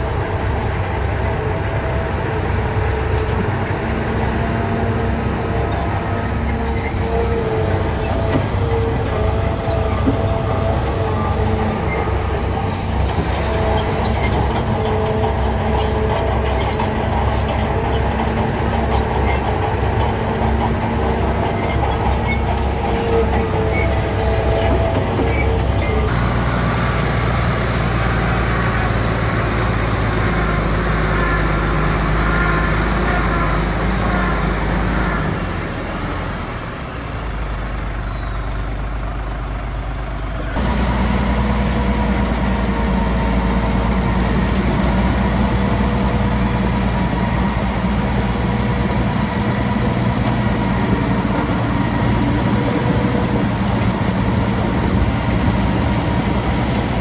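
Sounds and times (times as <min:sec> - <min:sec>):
heavy diesel machinery running: 0:00.0 - 0:57.0.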